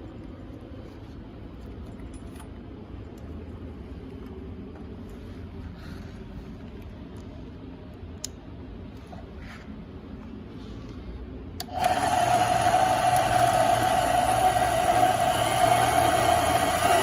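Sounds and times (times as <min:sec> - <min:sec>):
band saw motor whining: 0:11.7 - 0:17.0.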